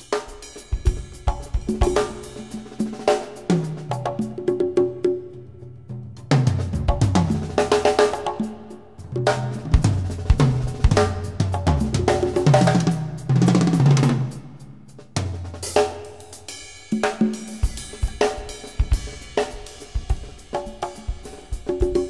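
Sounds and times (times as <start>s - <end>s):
drum kit beat: 0.0s - 22.0s.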